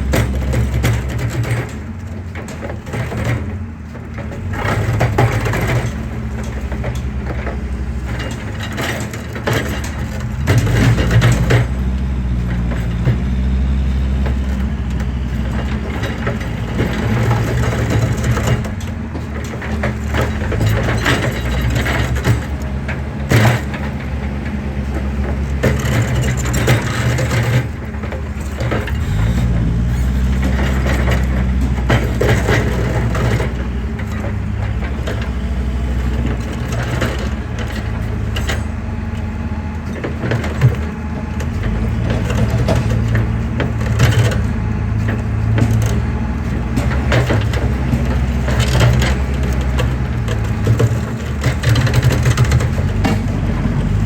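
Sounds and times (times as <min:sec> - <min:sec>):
excavator engine under load: 0:00.0 - 0:54.0.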